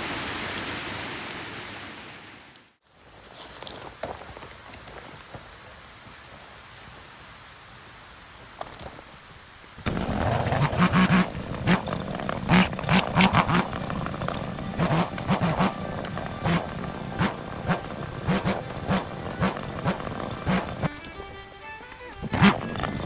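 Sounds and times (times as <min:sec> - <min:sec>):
chainsaw running: 0:09.8 - 0:23.0.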